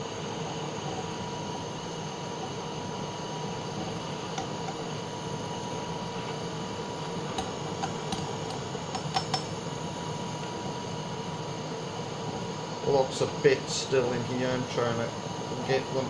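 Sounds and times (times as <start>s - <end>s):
blowtorch running steadily: 0.0s - 16.0s
tool clinking against crucible: 7.4s - 9.6s.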